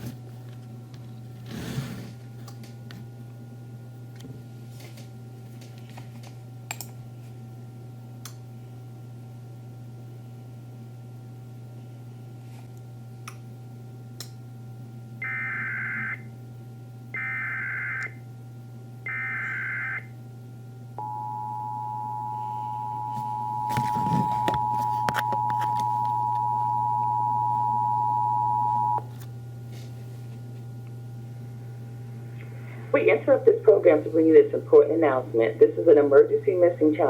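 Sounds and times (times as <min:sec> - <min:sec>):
low steady hum: 0:00.0 - 0:37.0
steady attention tone: 0:21.0 - 0:29.0.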